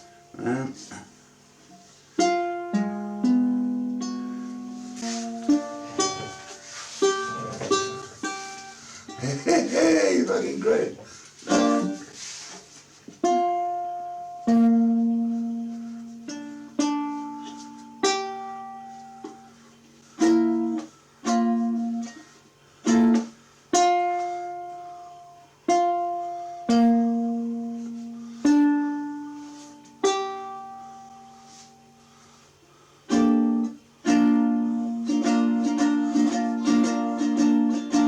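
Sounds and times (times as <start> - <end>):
ukulele chords strummed: 1.7 - 12.3, 13.2 - 32.0, 33.1 - 38.0.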